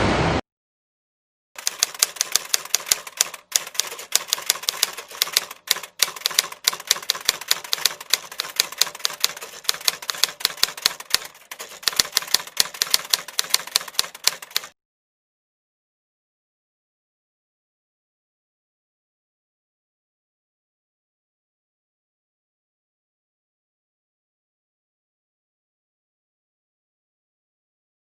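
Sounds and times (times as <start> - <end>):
typewriter key clicks: 1.6 - 14.7.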